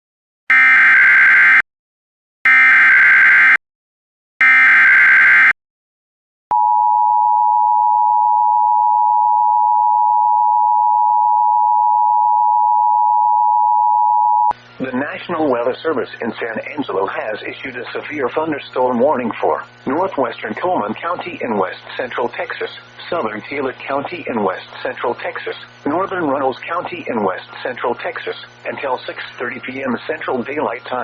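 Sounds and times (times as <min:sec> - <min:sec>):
digital header data bursts: 0:14.6 - 0:31.0.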